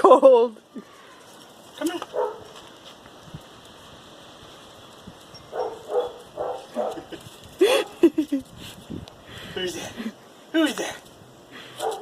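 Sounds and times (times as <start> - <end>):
dog barking: 2.1 - 2.5, 5.5 - 7.1, 11.8 - 12.0.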